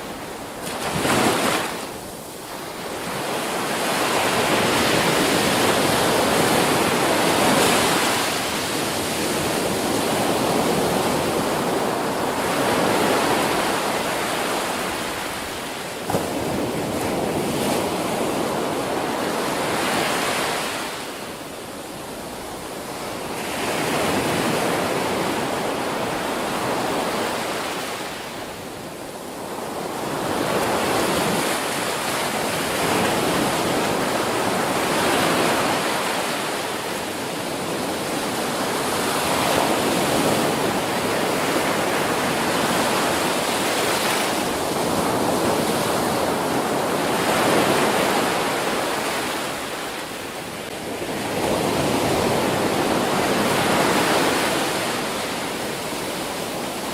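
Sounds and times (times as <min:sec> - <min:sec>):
ocean waves breaking: 0:00.0 - 0:56.9.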